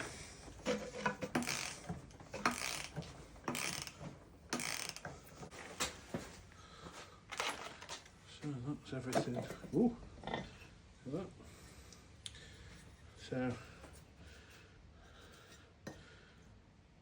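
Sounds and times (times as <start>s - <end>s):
ratchet wrench ratcheting: 0.8s - 5.2s.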